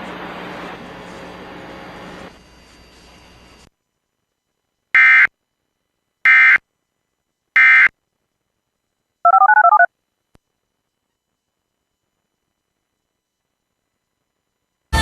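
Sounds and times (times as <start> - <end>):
touch-tone beeps: 9.3 - 9.9
warbling digital data tones: 9.3 - 9.9.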